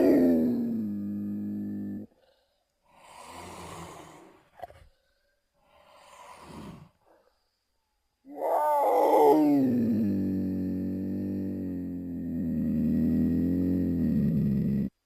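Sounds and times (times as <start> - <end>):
cougar growling cry: 0.0 - 2.1, 8.3 - 15.0
cougar breathy sounds: 2.0 - 7.5.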